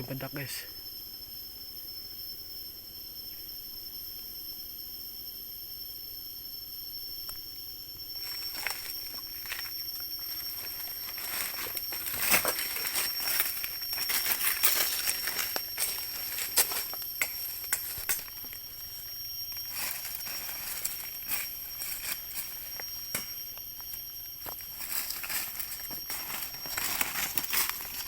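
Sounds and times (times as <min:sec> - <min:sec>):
insects droning: 0:00.0 - 0:28.0
footsteps crunching through leaves: 0:08.2 - 0:28.0.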